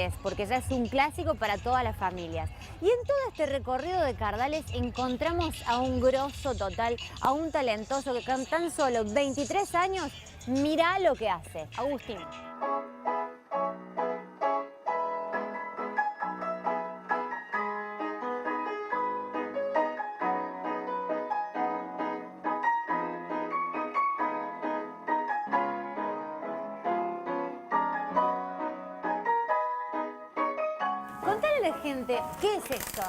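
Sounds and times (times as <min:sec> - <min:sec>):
player piano playing: 0:12.0 - 0:33.0.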